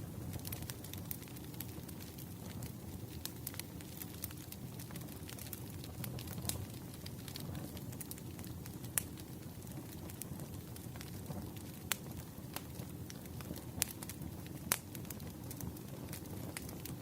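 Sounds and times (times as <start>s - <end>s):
firewood crackling and popping: 0.0s - 17.0s.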